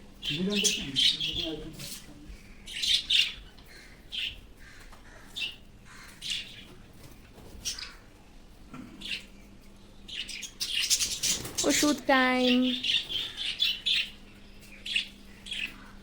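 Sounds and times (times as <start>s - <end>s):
budgerigars chirping: 0.2s - 6.7s, 7.6s - 8.0s, 10.1s - 14.2s, 14.8s - 16.0s.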